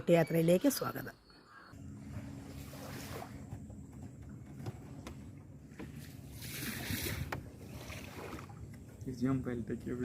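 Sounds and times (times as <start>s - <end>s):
boat engine hum: 0.0s - 10.0s
water rushing: 2.0s - 4.0s, 4.7s - 9.2s.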